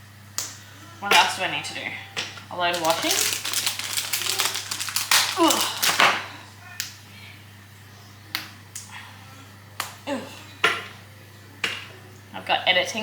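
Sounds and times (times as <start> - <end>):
chocolate bar snapping: 2.7 - 6.2.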